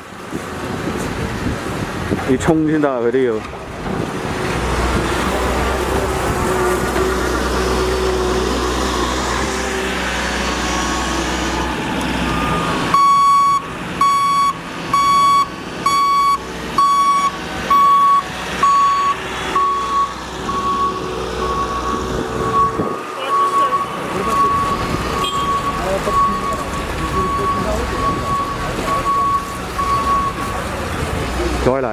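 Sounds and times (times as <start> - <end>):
truck engine running: 0.0 - 31.9
reversing alarm beeps: 10.7 - 30.6.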